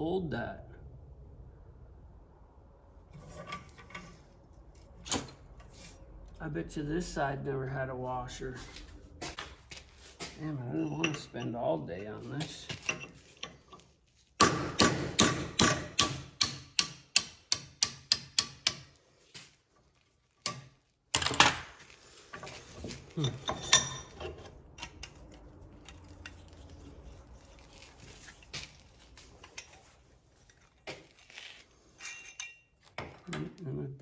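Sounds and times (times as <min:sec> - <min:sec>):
hammer striking metal: 0:14.4 - 0:18.9
metallic clinks of parts handled: 0:28.0 - 0:33.0.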